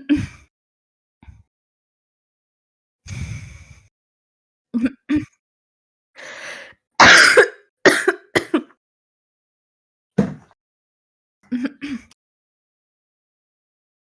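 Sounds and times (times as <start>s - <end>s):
breath in: 3.1s - 3.9s, 6.2s - 6.8s
woman clearing her throat: 7.0s - 8.7s
woman coughing: 7.0s - 8.7s.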